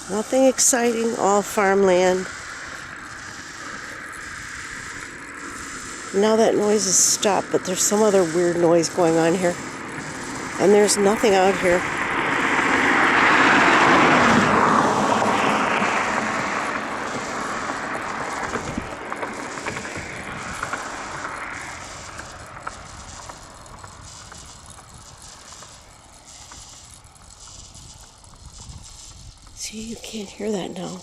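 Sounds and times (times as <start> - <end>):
faint repeating rasp: 0.0 - 12.8
vehicle passing on road: 0.0 - 31.0.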